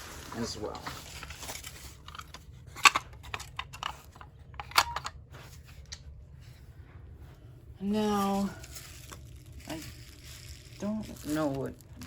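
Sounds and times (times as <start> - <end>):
packaging crinkling: 0.0 - 5.1, 7.8 - 12.0.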